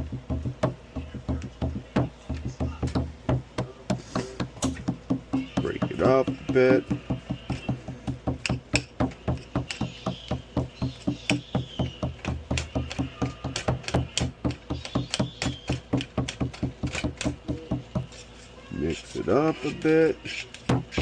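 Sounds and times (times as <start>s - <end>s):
utensil chopping in a pan: 0.0s - 18.4s, 19.3s - 21.0s.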